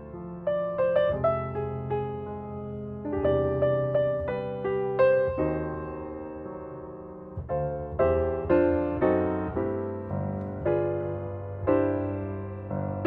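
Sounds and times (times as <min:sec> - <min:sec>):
gentle piano music: 0:00.0 - 0:13.0.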